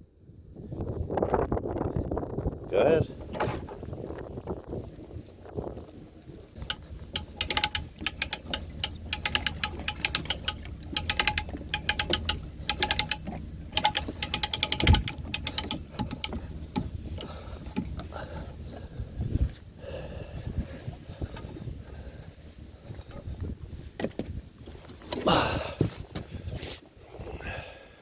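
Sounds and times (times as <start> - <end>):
fishing reel clicking: 6.6 - 18.1.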